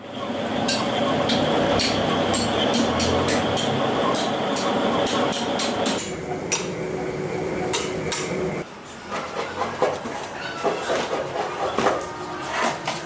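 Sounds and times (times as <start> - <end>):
steady machine noise: 0.0 - 8.7.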